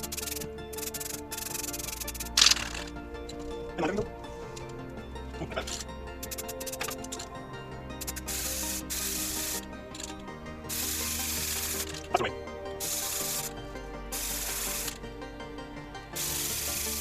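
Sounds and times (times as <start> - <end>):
spray paint can hissing: 0.0 - 2.8, 6.2 - 7.0, 8.0 - 10.1, 10.7 - 12.0, 12.8 - 13.5, 14.1 - 15.0, 16.2 - 17.0.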